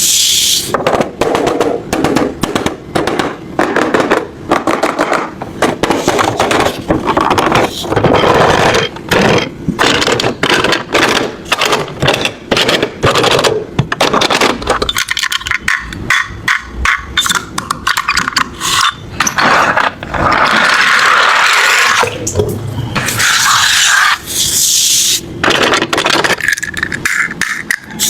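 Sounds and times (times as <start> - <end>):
metal knocking on hard plastic: 0.8 - 18.0
toy cars clattering and scraping: 4.7 - 22.0, 25.4 - 28.0
toy cars rolling rasp: 18.0 - 22.0.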